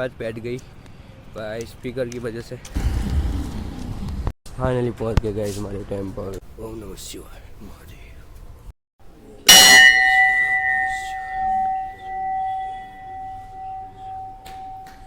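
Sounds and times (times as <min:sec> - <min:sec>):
temple bell ringing: 0:09.5 - 0:15.0.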